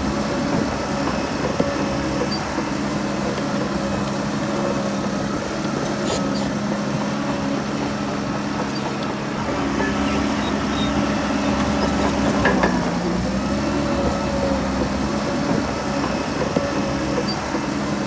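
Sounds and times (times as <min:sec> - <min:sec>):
heavy diesel engine running: 0:00.0 - 0:18.0.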